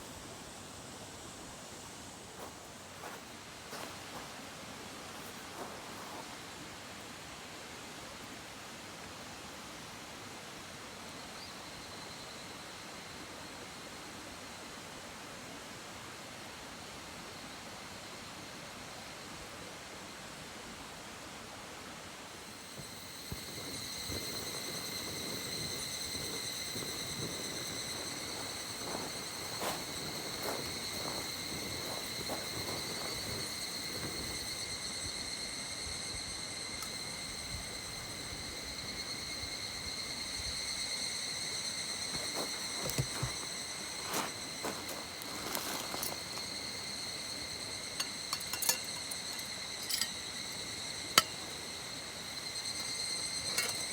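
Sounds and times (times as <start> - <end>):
insect high buzz: 0.0 - 6.6, 22.3 - 53.9
mountain stream rushing: 41.0 - 52.2.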